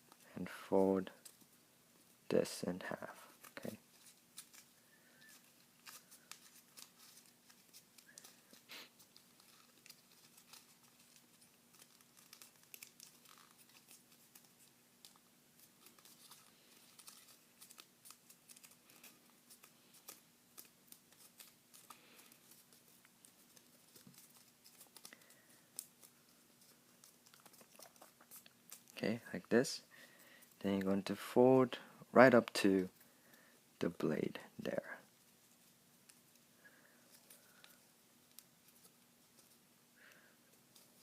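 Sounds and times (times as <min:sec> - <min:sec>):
paper being folded and creased: 0:03.3 - 0:28.9.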